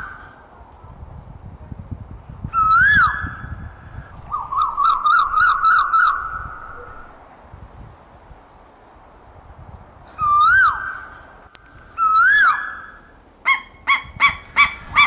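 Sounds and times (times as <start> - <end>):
bird calling whistled notes: 2.5 - 3.6, 4.3 - 7.2, 10.1 - 15.0.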